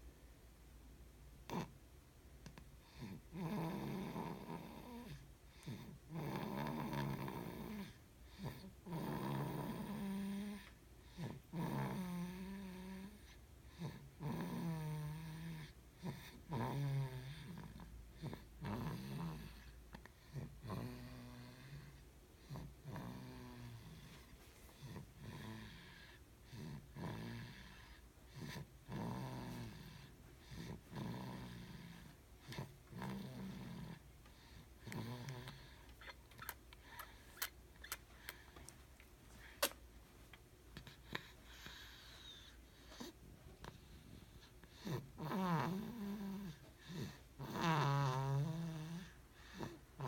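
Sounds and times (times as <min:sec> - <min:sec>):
person snoring: 0:24.8 - 0:36.1, 0:44.7 - 0:50.0.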